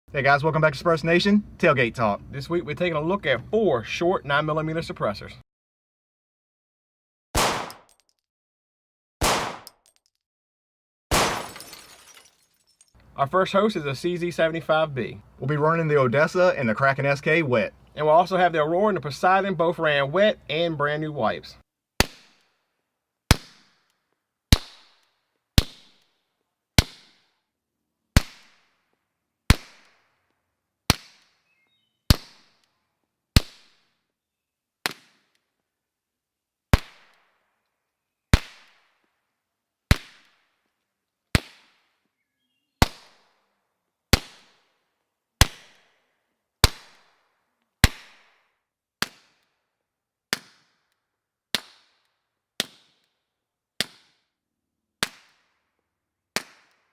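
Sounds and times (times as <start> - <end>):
suppressed pistol shots: 7.4 - 8.0, 9.2 - 9.8, 11.1 - 11.4.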